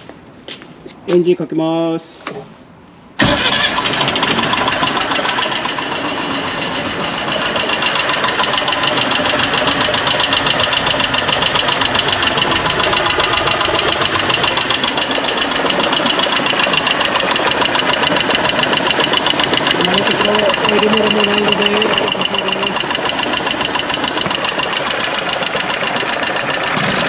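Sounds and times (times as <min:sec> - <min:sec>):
engine idling: 0:03.2 - 0:27.0.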